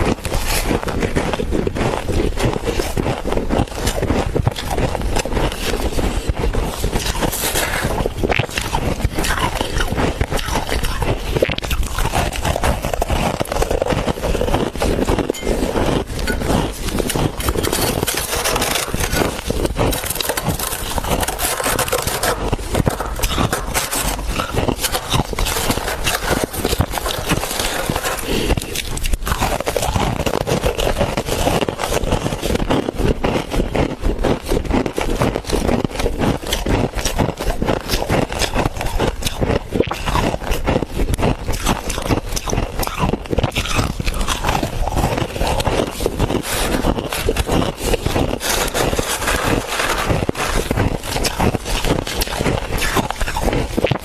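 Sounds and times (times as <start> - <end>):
frost being chewed and scraped: 0.0 - 54.0.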